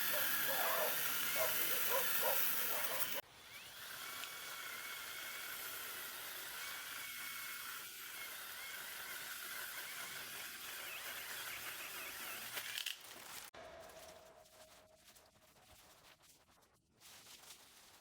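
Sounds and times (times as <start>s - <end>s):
rustle: 12.6s - 18.0s.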